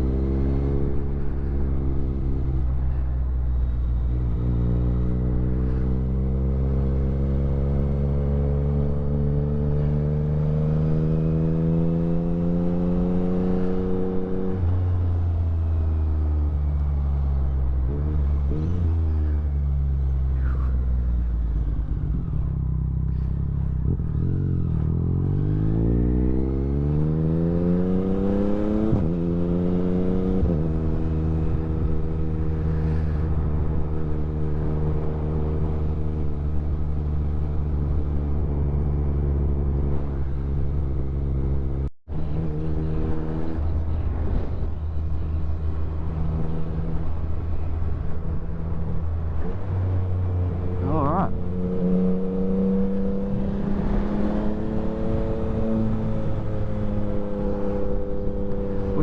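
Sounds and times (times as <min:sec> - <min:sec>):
motorcycle engine revving: 0:17.0 - 0:59.0.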